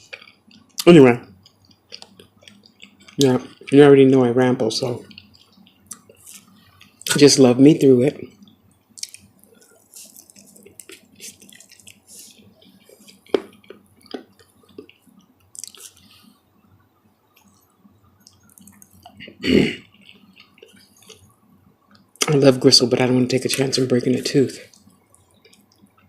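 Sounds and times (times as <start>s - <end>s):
wet mouth chewing: 0.1s - 3.7s, 5.0s - 7.1s, 8.4s - 16.4s, 17.3s - 21.3s.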